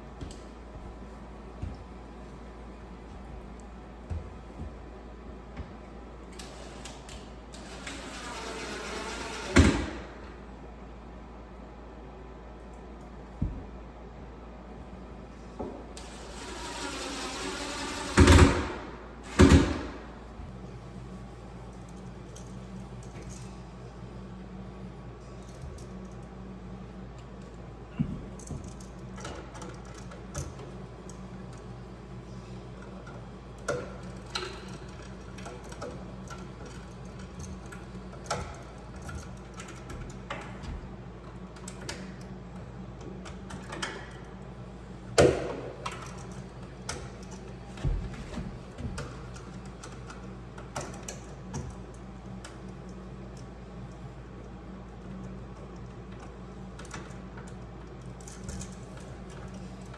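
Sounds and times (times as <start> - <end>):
steady low hum: 0.0 - 59.9.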